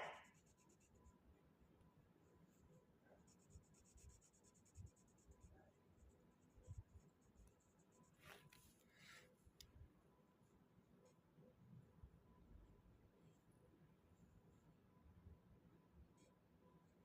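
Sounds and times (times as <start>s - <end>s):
drawing strokes scratching: 0.2s - 1.2s, 2.4s - 9.2s.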